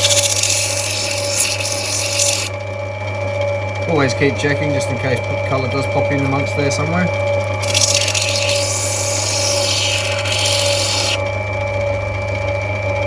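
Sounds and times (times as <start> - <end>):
stone grinding on wheel: 0.0 - 2.5, 7.6 - 11.3
machine humming: 0.0 - 13.0.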